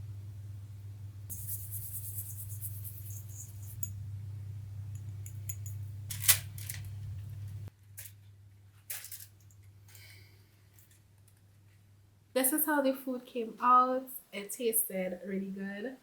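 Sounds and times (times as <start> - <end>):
low hum: 0.0 - 7.7.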